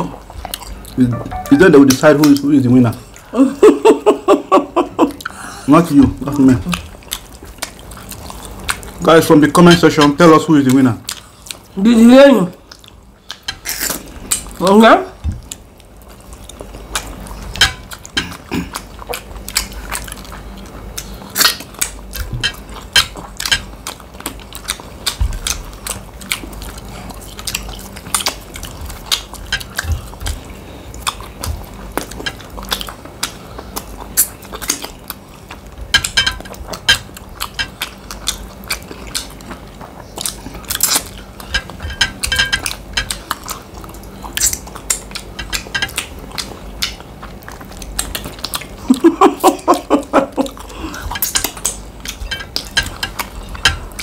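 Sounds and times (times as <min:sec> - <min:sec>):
chewing: 0:00.0 - 0:03.3, 0:05.0 - 0:54.0
utensils clinking on plates: 0:35.9 - 0:37.8, 0:40.8 - 0:43.3, 0:45.2 - 0:46.1, 0:51.0 - 0:54.0.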